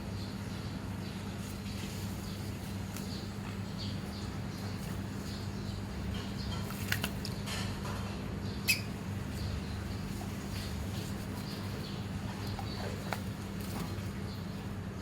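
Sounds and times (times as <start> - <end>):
steady low hum: 0.0 - 15.0
parrot chirping and squeaking: 8.6 - 10.7.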